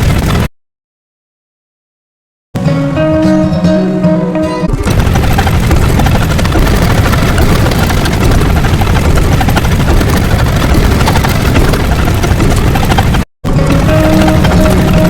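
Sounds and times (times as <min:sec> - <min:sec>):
loud pulsing machine noise: 0:00.0 - 0:00.5, 0:04.7 - 0:15.0.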